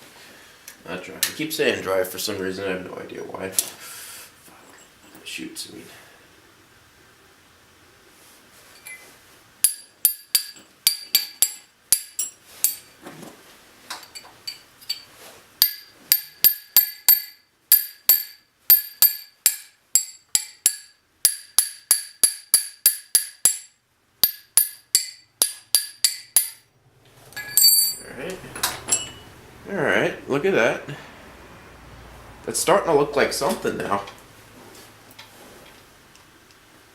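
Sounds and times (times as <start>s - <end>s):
hammer tapping on metal: 9.6s - 12.8s, 15.6s - 26.6s.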